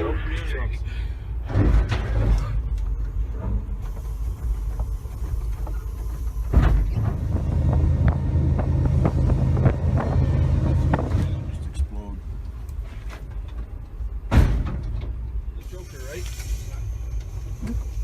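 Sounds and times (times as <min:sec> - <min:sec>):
train locomotive rumbling: 0:00.0 - 0:18.0
loud bang of train hitting tree: 0:14.3 - 0:15.2.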